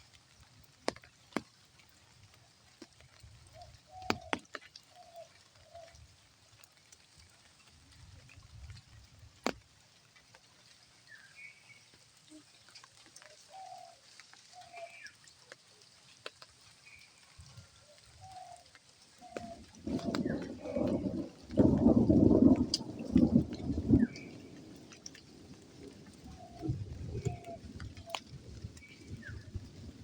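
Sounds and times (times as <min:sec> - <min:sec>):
faint low bird calls: 0:03.4 - 0:06.0, 0:11.0 - 0:15.3, 0:16.7 - 0:30.0.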